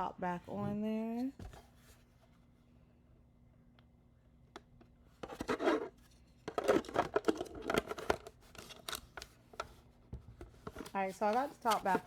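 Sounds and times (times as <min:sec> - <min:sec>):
plastic scraping on plastic: 0:10.4 - 0:12.0.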